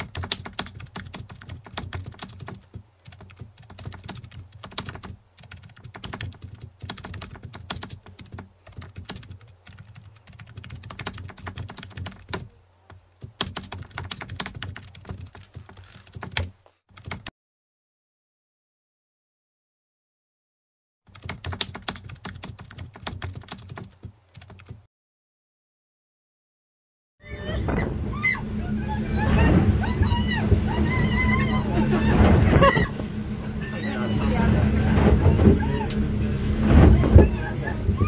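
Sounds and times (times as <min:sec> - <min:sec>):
keyboard typing clicks: 0:00.0 - 0:17.3, 0:21.1 - 0:24.8
low steady hum: 0:27.3 - 0:38.0.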